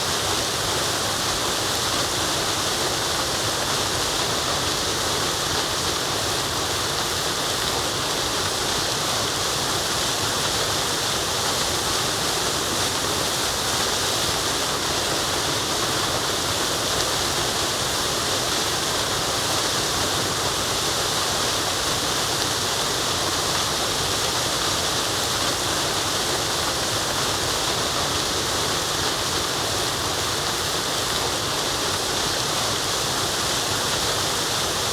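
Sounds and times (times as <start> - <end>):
waterfall rushing: 0.0 - 34.9.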